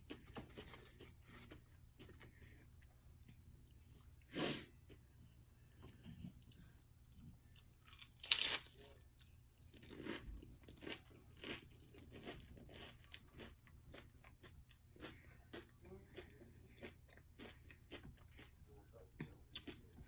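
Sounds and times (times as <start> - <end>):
crunchy chewing: 0.0 - 4.1, 5.8 - 18.6
crunching bite into chips: 7.9 - 8.9.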